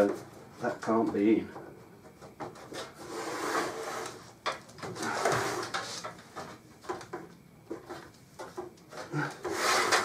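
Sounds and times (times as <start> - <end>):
metal shield scraping: 2.8 - 4.3, 9.1 - 10.0.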